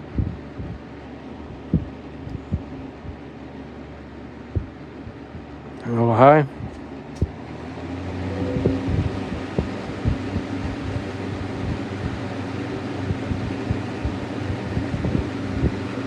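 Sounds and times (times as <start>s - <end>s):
low thumps: 0.0s - 0.9s, 1.5s - 3.3s, 4.4s - 7.4s, 8.4s - 12.3s, 12.9s - 16.0s
electric motor hum: 0.0s - 16.0s
fan air rushing: 0.0s - 16.0s.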